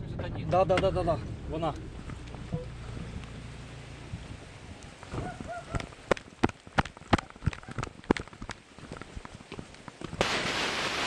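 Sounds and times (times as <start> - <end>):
quick footsteps on hard ground: 5.0 - 10.2
loud steady hiss: 10.2 - 11.0.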